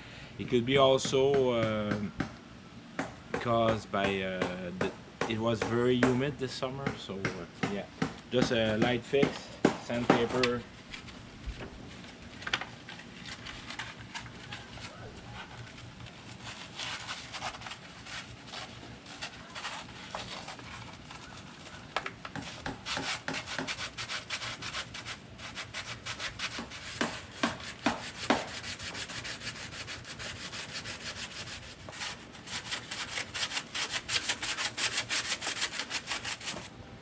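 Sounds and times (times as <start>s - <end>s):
sandpaper scratching metal: 13.1s - 36.7s.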